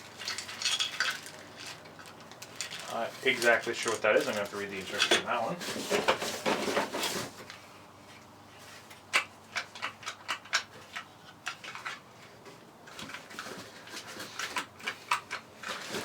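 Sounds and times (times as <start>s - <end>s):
handling noise: 0.0s - 7.6s.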